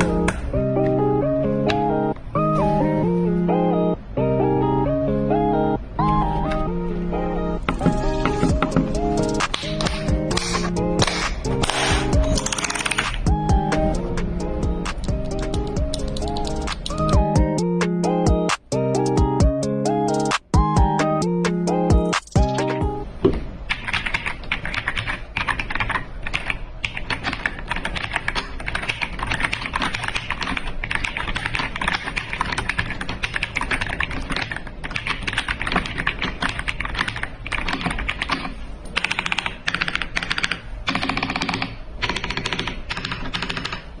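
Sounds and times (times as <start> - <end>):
mechanical keyboard typing: 7.7 - 13.9, 14.8 - 17.2, 23.7 - 43.9.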